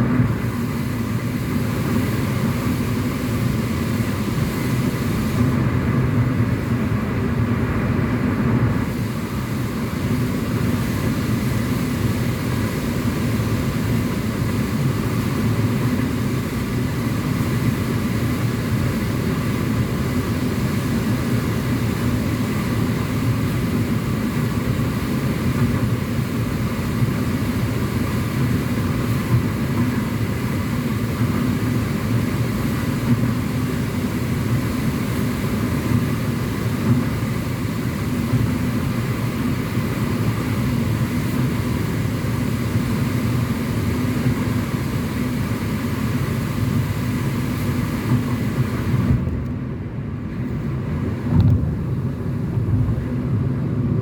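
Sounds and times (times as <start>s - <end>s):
car interior road and engine rumble: 0.0s - 54.0s.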